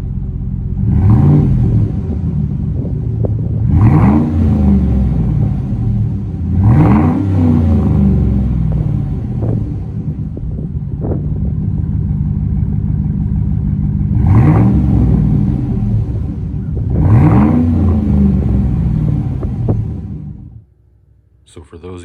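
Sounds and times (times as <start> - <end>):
car engine driving: 0.0 - 22.0.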